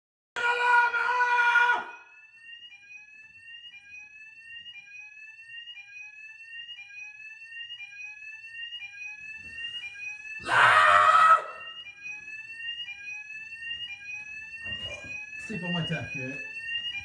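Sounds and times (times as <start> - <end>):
person yelling: 0.4 - 2.0, 10.4 - 11.7
fire alarm rising tone: 0.4 - 17.0.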